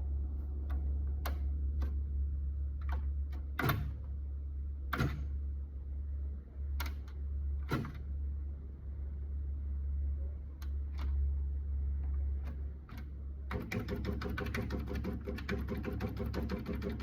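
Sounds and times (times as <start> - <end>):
low hum: 0.0 - 13.5
typewriter key strikes: 13.5 - 17.0.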